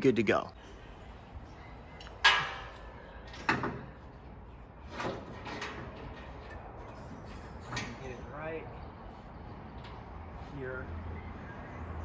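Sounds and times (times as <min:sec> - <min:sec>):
metal rattle: 0:04.8 - 0:08.3.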